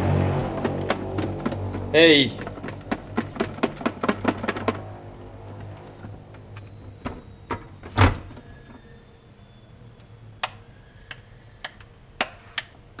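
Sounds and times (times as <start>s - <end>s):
loud thud: 0.0s - 5.0s
sharp clicks and knocks: 0.4s - 8.0s.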